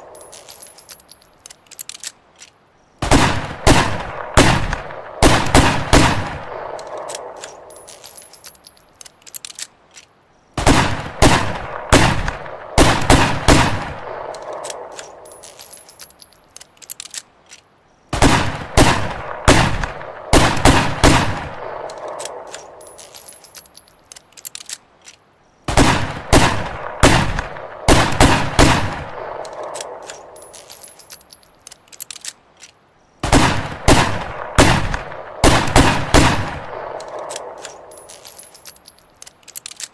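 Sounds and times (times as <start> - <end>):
revolver gunshots: 3.0 - 7.4, 10.6 - 15.0, 18.2 - 22.5, 25.7 - 30.2, 33.2 - 37.9.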